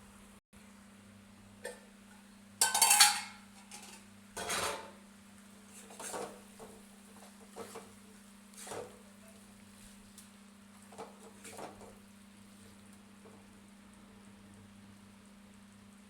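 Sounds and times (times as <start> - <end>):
metal pots clattering: 2.6 - 5.0.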